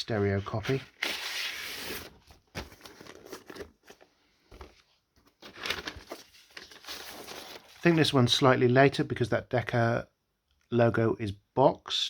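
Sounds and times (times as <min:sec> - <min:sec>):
paper sleeve rustling and crinkling: 0:00.0 - 0:08.1.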